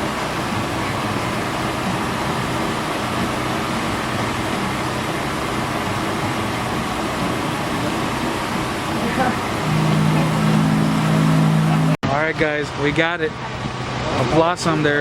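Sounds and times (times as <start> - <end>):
portable generator humming: 0.0 - 12.0.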